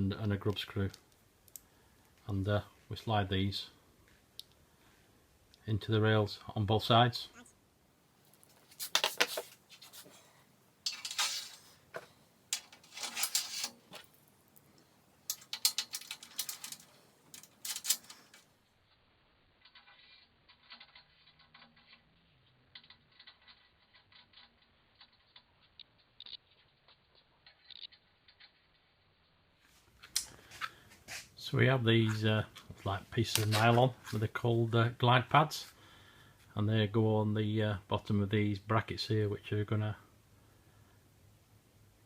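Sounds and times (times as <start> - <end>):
metal hardware clinking: 10.8 - 18.5
faint scattered ticks: 19.6 - 28.6.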